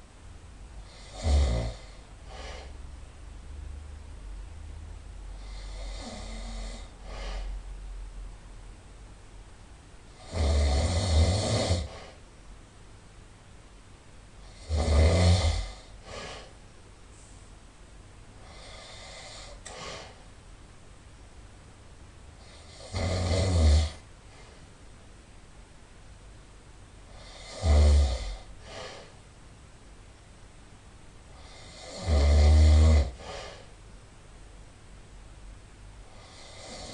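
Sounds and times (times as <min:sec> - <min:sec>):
faint breaths: 0:00.8 - 0:03.0, 0:05.3 - 0:07.7, 0:15.4 - 0:17.7, 0:18.4 - 0:20.4, 0:23.9 - 0:24.8, 0:27.1 - 0:29.3, 0:33.0 - 0:33.8
person snoring loudly: 0:00.9 - 0:02.7, 0:05.4 - 0:07.5, 0:10.2 - 0:12.2, 0:14.4 - 0:16.5, 0:18.4 - 0:20.2, 0:22.4 - 0:24.0, 0:27.1 - 0:29.1, 0:31.4 - 0:33.6, 0:36.1 - 0:36.9.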